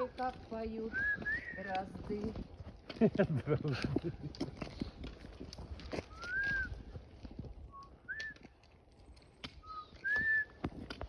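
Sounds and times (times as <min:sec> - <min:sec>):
person whistling birdsong: 0:00.9 - 0:01.7, 0:06.1 - 0:06.8, 0:07.7 - 0:08.4, 0:09.6 - 0:10.7.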